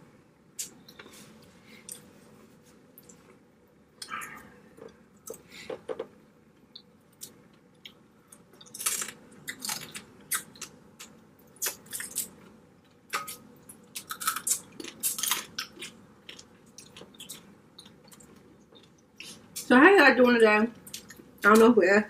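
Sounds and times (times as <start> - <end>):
chewing with cracks and crunches: 6.5 - 19.7, 20.8 - 21.5.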